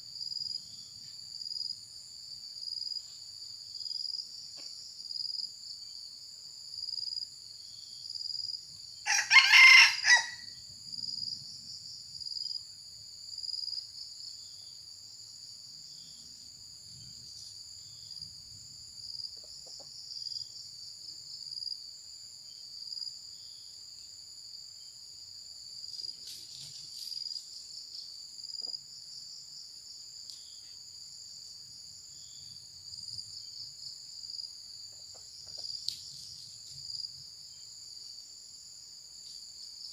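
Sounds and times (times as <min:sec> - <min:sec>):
insects trilling: 0:02.4 - 0:39.9
rooster crowing: 0:09.0 - 0:10.6.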